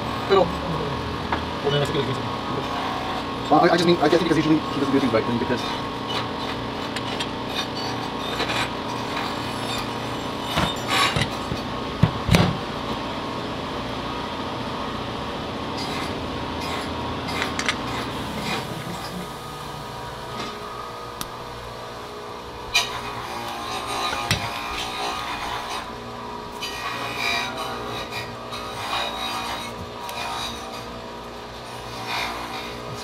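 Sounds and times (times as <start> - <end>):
steady hum: 0.0 - 33.0
tools knocking and clicking: 17.4 - 17.8.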